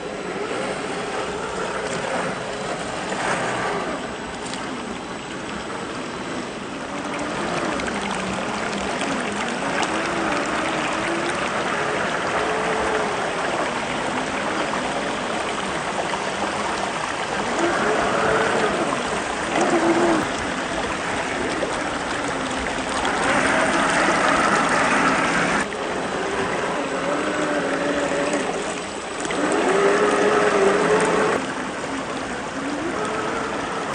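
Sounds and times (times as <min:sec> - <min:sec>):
water flowing: 0:00.0 - 0:33.9
electric motor whining: 0:22.8 - 0:31.4.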